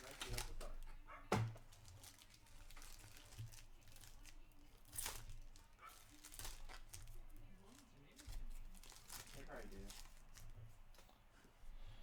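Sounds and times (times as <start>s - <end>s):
wrapper crinkling: 1.7s - 10.5s.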